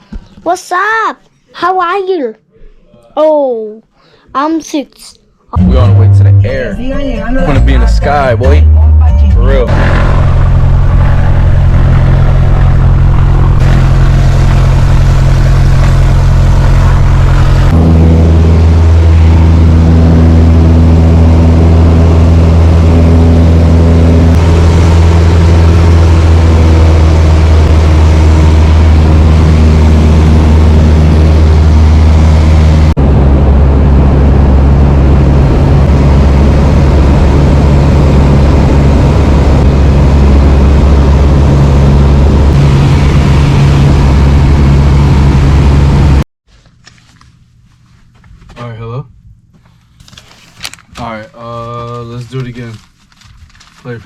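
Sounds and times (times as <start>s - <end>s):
propeller aircraft engine droning: 9.7s - 46.2s.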